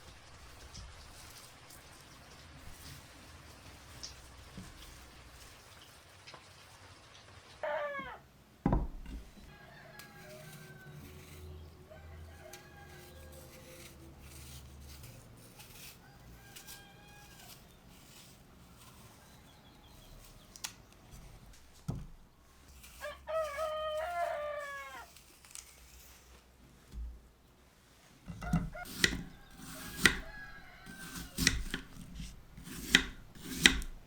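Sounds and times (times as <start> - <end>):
rooster crowing: 7.6 - 8.2, 9.4 - 13.7, 16.0 - 17.6, 23.0 - 25.1, 28.4 - 31.7.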